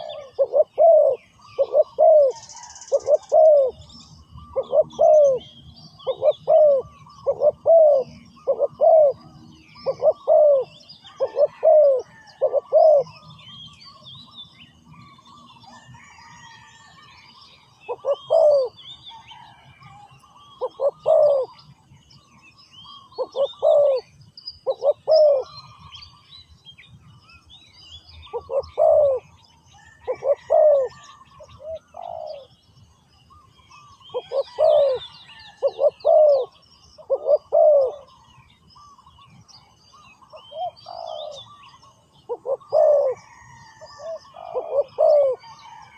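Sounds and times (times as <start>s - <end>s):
doves cooing: 0.0s - 13.2s, 17.9s - 21.6s, 22.9s - 25.8s, 28.3s - 32.5s, 33.8s - 38.2s, 40.0s - 45.9s
small birds chirping: 0.0s - 16.4s, 17.2s - 45.9s.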